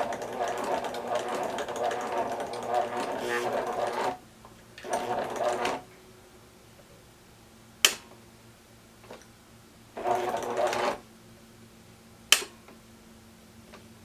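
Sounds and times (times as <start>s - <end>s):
sewing machine stitching: 0.0s - 4.2s, 4.8s - 5.8s, 10.0s - 11.0s
sharp click: 7.8s - 8.2s, 12.3s - 12.8s.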